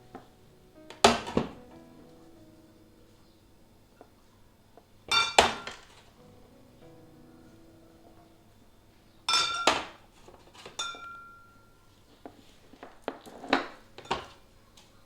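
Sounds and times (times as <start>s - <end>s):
glass containers clinking: 5.1s - 6.0s, 9.3s - 10.0s, 10.6s - 11.7s, 13.5s - 14.4s.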